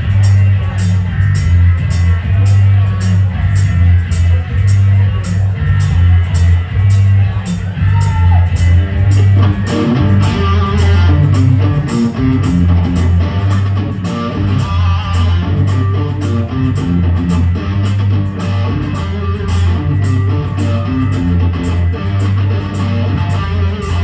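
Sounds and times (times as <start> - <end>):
bass guitar: 0.0 - 24.0
electric guitar riff: 0.0 - 24.0
drum beat: 3.5 - 22.4.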